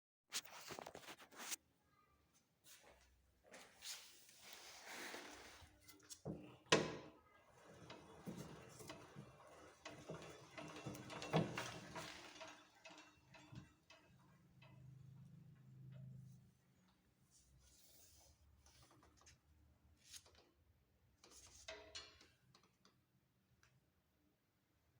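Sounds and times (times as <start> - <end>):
sewing machine mechanism clicking: 6.7 - 14.8.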